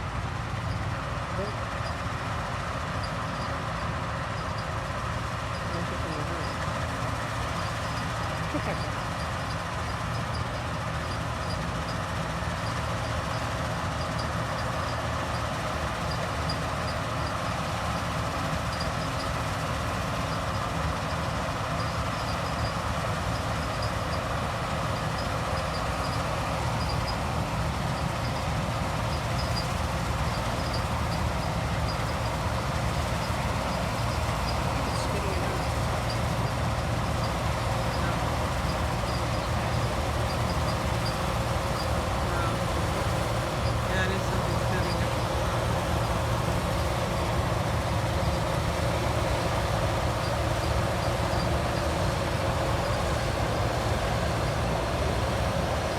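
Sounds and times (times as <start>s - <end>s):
harvest machinery droning: 0.0s - 55.9s
faint regular ticking: 24.9s - 54.6s.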